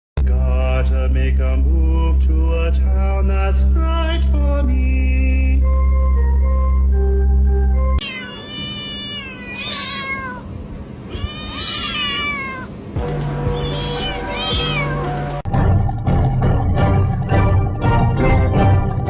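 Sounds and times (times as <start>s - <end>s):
cat meowing: 8.0s - 15.2s
background music: 13.0s - 19.0s.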